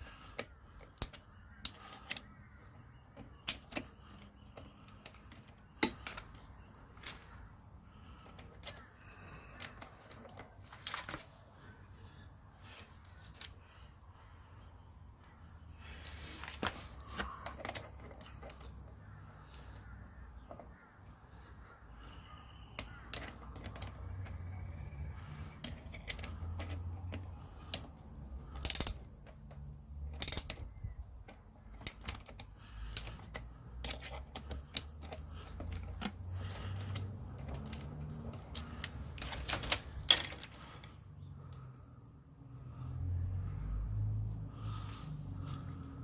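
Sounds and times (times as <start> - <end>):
metal clicks of wrench on chain tool: 25.4 - 40.6.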